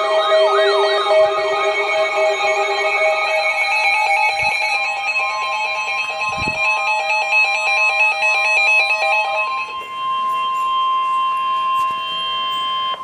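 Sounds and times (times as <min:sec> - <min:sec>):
background music: 0:00.0 - 0:05.0
loud electronic alert tone: 0:00.0 - 0:13.0.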